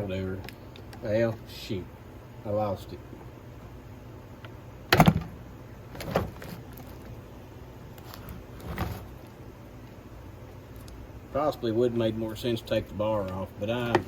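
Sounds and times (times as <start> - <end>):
chainsaw and tools knocking: 4.9 - 5.4.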